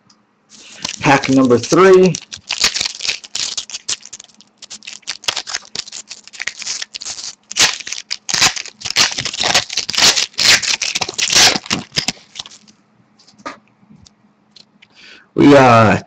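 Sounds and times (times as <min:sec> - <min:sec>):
foil wrapper tearing and crinkling: 0:00.5 - 0:12.7.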